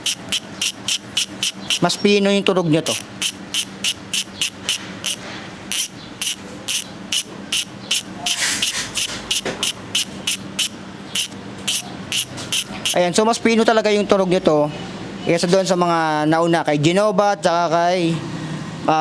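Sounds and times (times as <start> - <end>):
bicycle hub pawls clicking: 0.0 - 13.1.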